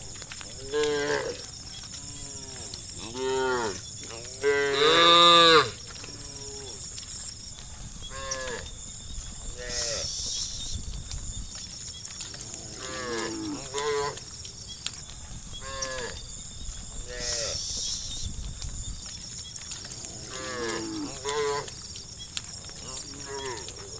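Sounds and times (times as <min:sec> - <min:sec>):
cows mooing: 0:00.4 - 0:06.8, 0:12.4 - 0:14.2, 0:15.6 - 0:16.2, 0:20.0 - 0:21.8, 0:22.6 - 0:23.9.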